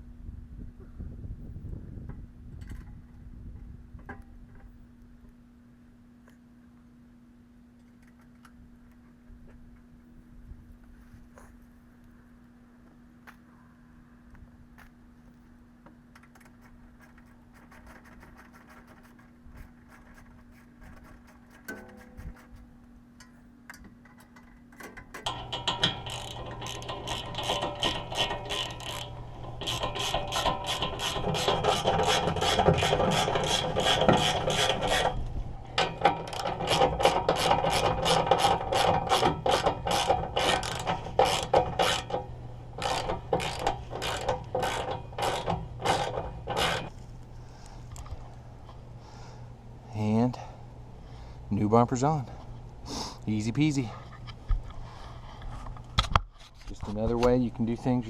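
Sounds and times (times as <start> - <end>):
steady low hum: 0.0 - 58.0
socket ratchet clicking: 35.8 - 46.9.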